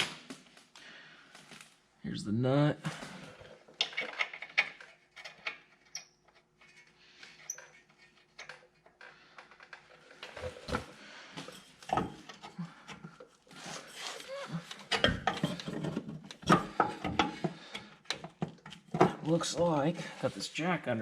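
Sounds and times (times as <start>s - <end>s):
tools clanking under a car: 14.8s - 19.6s.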